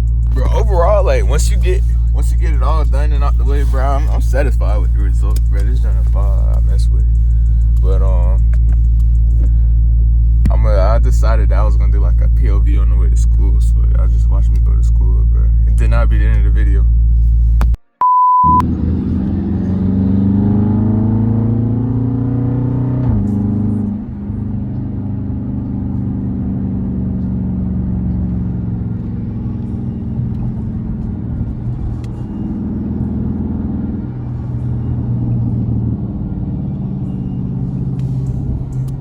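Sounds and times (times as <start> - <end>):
car engine accelerating: 0.0 - 17.8, 18.5 - 39.0.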